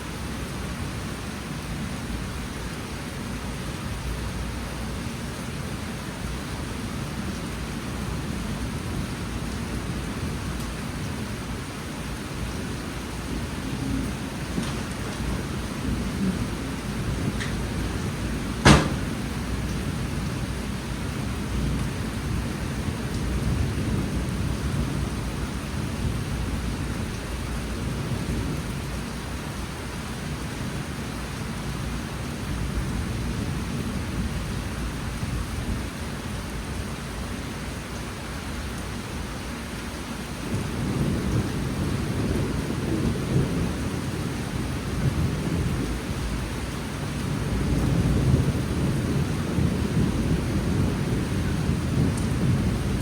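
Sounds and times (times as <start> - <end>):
heavy rain falling: 0.0 - 53.0
sharp crack: 18.6 - 19.4.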